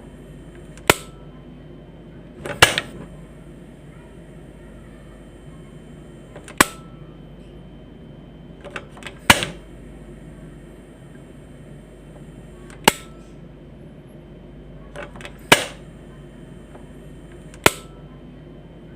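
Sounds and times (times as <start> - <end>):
gas hissing: 0.0 - 1.2, 2.3 - 7.0, 8.6 - 13.5, 15.0 - 18.0
ignition snap: 0.5 - 1.2, 2.4 - 3.1, 6.3 - 6.9, 8.6 - 9.6, 12.7 - 13.2, 15.0 - 15.8, 16.7 - 18.0
stove knob clicks: 0.8 - 1.1, 2.4 - 2.9, 8.6 - 9.6, 12.7 - 13.1, 15.0 - 15.8, 17.5 - 17.9.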